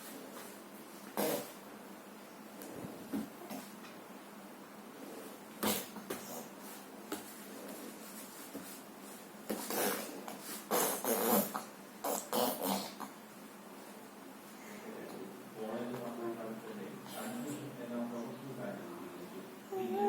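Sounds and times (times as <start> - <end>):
child blowing raspberries: 9.5 - 13.0.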